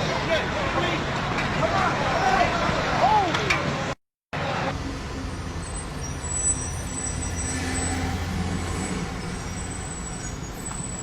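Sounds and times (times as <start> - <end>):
vehicle engine rumbling: 4.4 - 11.0.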